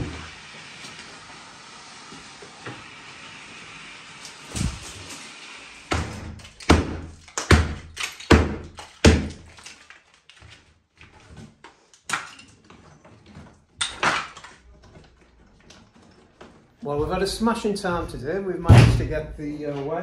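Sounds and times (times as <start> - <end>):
heavy demolition knocks: 4.5 - 5.0, 5.9 - 9.5, 16.9 - 19.6
bangs: 17.0 - 19.6.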